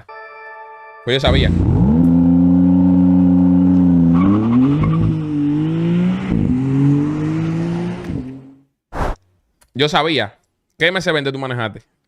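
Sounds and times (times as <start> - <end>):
car engine accelerating hard: 1.3 - 8.7.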